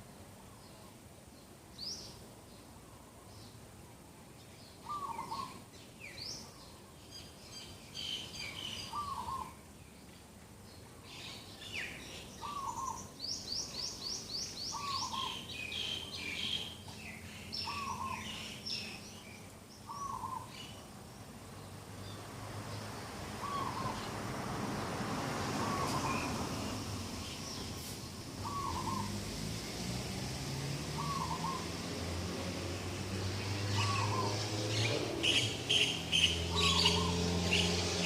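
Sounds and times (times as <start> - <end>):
birds chirping and trilling: 4.4 - 29.2, 30.7 - 38.0.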